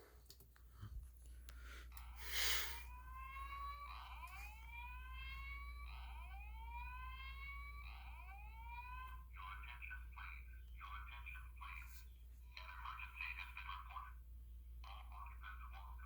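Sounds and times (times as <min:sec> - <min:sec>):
fire alarm whoop tone: 0:02.0 - 0:09.4.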